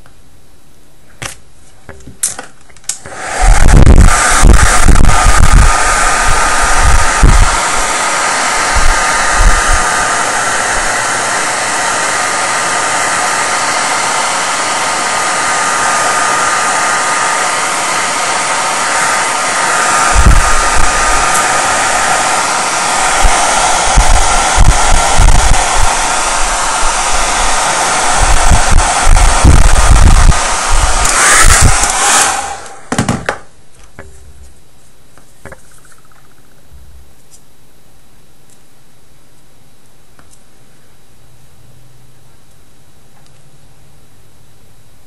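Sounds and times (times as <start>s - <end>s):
heat gun blowing with whine: 2.9s - 33.2s.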